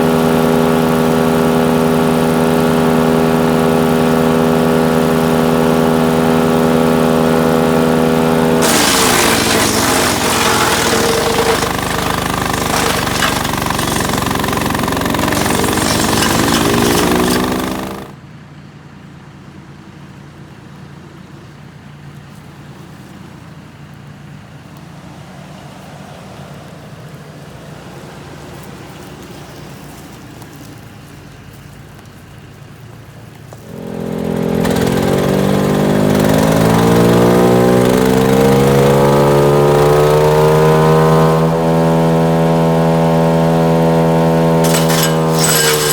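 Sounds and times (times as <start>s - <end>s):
wood chipper engine running: 0.0s - 18.2s, 33.5s - 45.9s
branch grinding and chipping: 8.6s - 18.1s, 44.5s - 45.9s.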